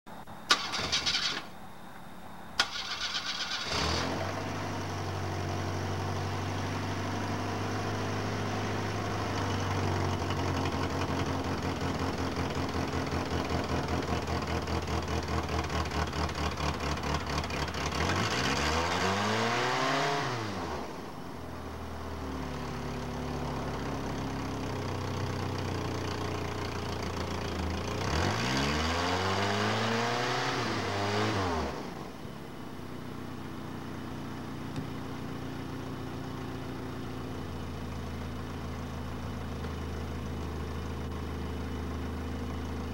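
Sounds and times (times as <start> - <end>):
car engine cranking and starting: 0.2 - 1.8, 2.5 - 32.3
engine revving: 2.6 - 6.4, 15.8 - 21.0, 27.3 - 32.1
engine idling unevenly: 20.9 - 28.0, 32.0 - 42.9.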